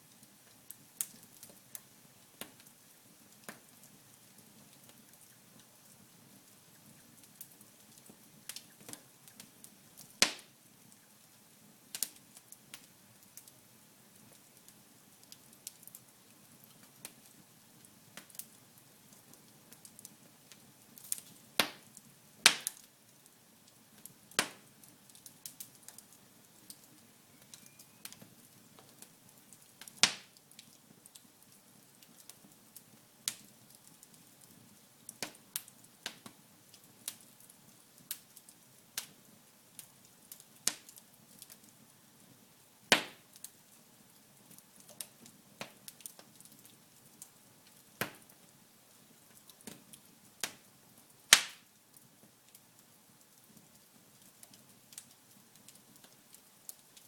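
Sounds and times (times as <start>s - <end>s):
burning logs crackling and popping: 0.0s - 57.0s
rustle of flames: 0.0s - 57.0s.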